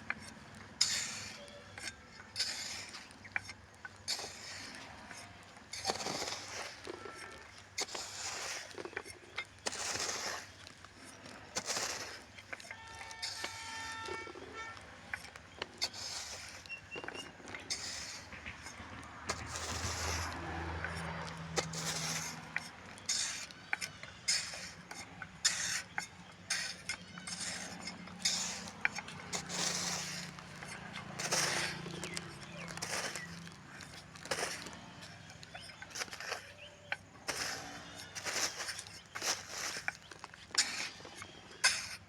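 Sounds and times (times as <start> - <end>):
trowel scraping mortar: 0.0 - 42.0
trowel clinking against bricks: 21.6 - 42.0.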